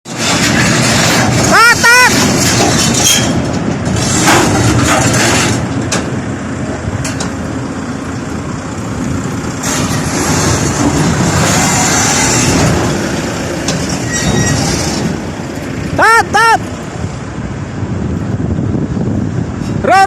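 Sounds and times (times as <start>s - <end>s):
heavy diesel machinery running: 0.1s - 20.0s.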